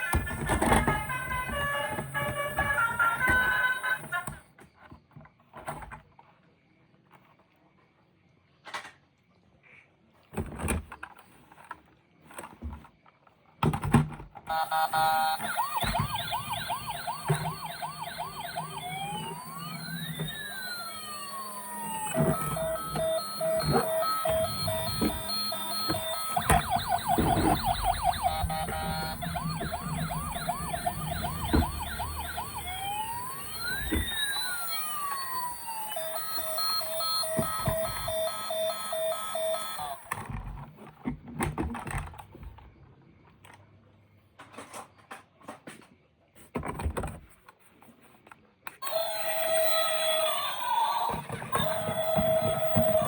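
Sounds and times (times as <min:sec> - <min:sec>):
toy electronic siren: 0:00.0 - 0:04.4, 0:14.5 - 0:40.4, 0:48.8 - 0:53.0.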